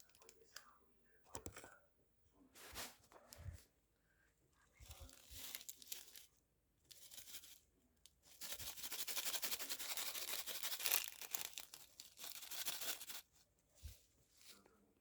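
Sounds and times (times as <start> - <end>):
plastic packaging crinkling: 4.9 - 6.3, 8.6 - 13.2.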